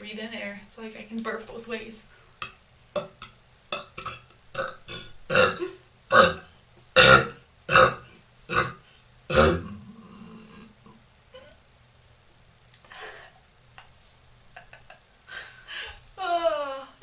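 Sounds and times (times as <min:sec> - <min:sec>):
woman burping: 0:03.0 - 0:06.4, 0:07.0 - 0:10.7, 0:11.4 - 0:11.6.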